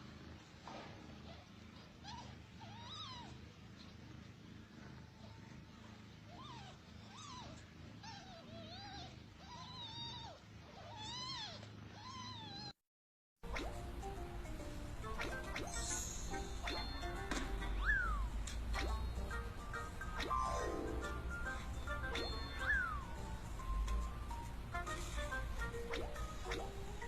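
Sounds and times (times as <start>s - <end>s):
kittens mewing: 1.0s - 12.8s, 15.1s - 23.4s
low steady hum: 13.5s - 27.0s.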